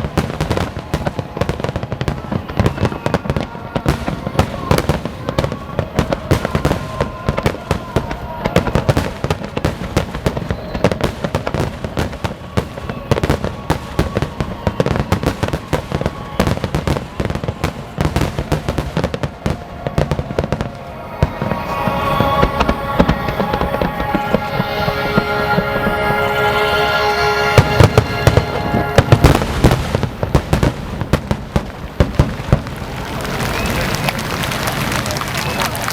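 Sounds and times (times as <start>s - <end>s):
fireworks bangs and crackle: 0.0s - 35.9s
music playing: 17.7s - 30.9s.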